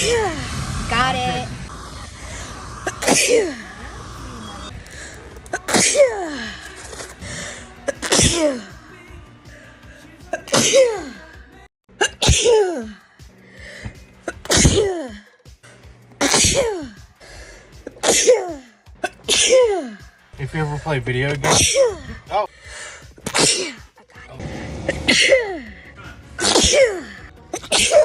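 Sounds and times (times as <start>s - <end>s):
person sneezing: 2.8s - 3.6s, 5.5s - 6.5s, 7.9s - 8.7s, 10.3s - 11.3s, 12.0s - 13.0s, 14.3s - 15.2s, 16.2s - 17.0s, 17.9s - 20.0s, 21.4s - 22.2s, 23.2s - 23.9s, 26.4s - 28.0s.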